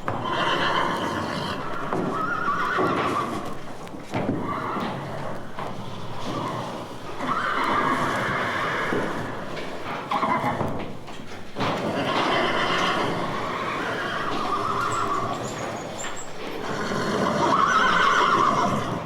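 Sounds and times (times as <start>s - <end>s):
animal cries: 12.0s - 19.0s.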